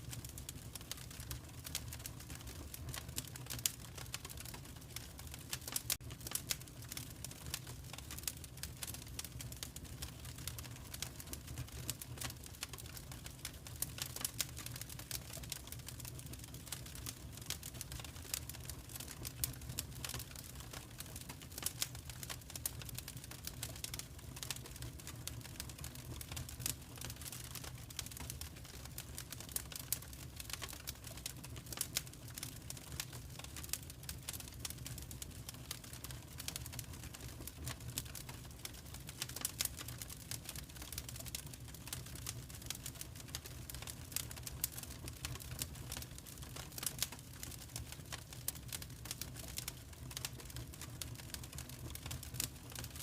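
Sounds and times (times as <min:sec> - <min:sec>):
wood fire crackles and pops: 0:00.0 - 0:53.0.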